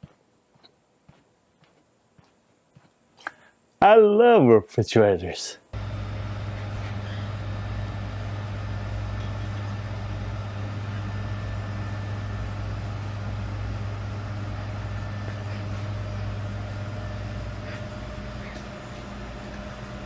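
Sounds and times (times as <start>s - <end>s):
refrigerator electrical hum: 5.8s - 20.0s.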